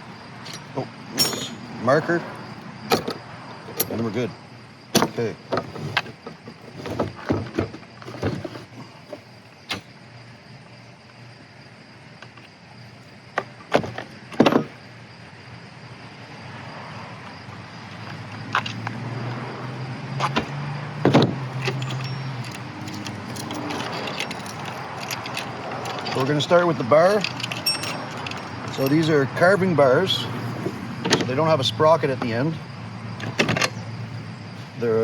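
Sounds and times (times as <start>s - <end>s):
clicks and knocks of parts and tools: 0.4s - 1.7s, 17.9s - 19.0s, 20.2s - 29.1s, 33.2s - 33.8s.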